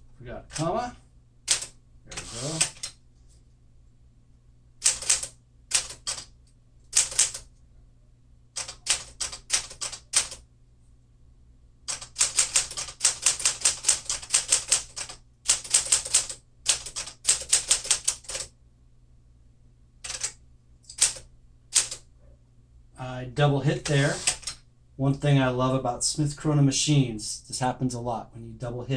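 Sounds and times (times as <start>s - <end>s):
manual typewriter key strikes: 4.8s - 6.3s, 7.0s - 7.4s, 8.6s - 10.4s, 11.9s - 18.5s, 21.8s - 22.0s.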